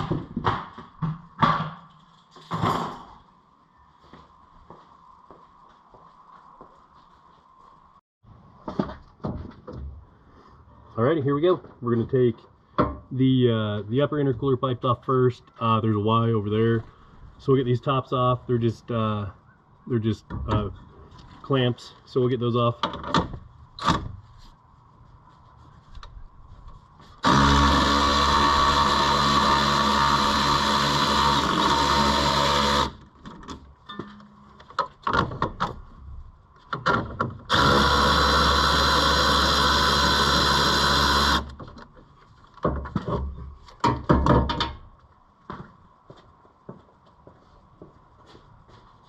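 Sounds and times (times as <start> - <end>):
tools and metal parts clanking: 1.5 - 3.2, 33.1 - 35.9
cordless power tool running: 27.2 - 33.0, 37.5 - 41.6.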